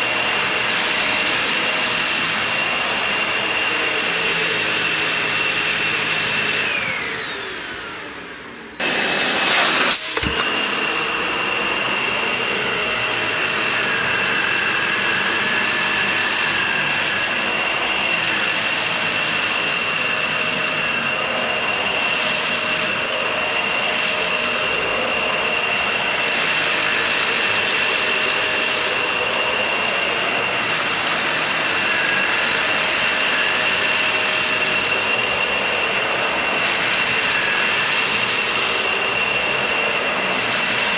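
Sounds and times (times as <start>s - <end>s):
vacuum cleaner motor whine: 0.0s - 40.9s.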